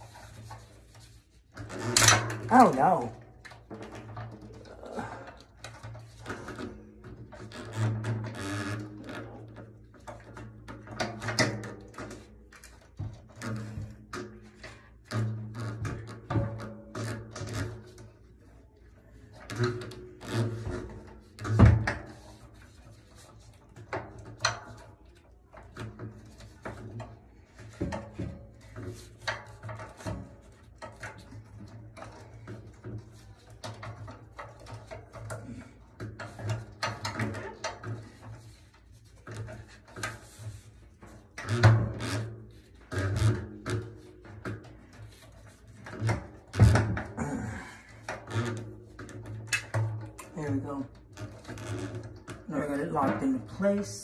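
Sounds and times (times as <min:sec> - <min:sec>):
knocks and clicks of handling: 0:19.3 - 0:53.4.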